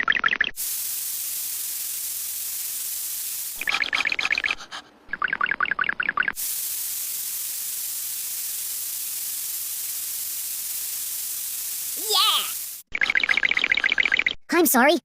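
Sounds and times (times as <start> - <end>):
steady hiss: 0.6 - 3.7, 6.4 - 12.9
rapid warbling chirp: 3.6 - 6.4.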